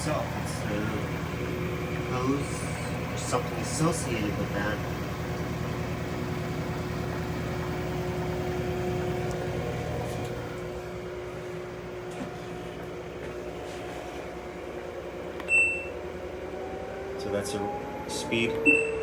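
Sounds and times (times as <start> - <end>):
washing machine humming: 0.0 - 19.0
electronic beep: 15.5 - 15.9, 18.6 - 19.0.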